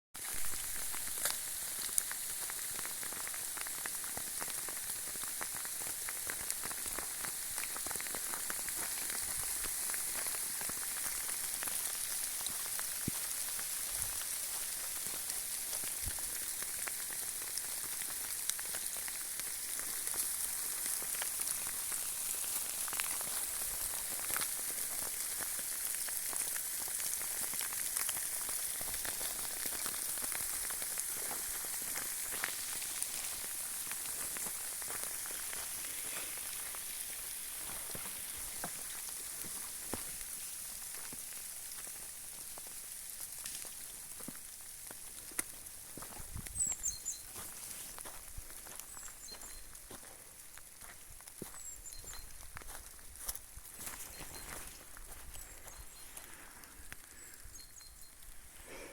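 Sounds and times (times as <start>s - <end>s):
hail falling on hard surfaces: 0.2s - 46.2s.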